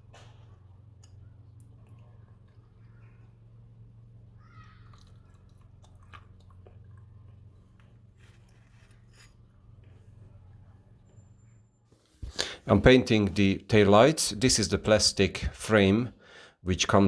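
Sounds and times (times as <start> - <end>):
faint low hum: 0.0 - 17.0
small clicks and scrapes: 4.6 - 12.2
faint squeak: 8.4 - 11.9.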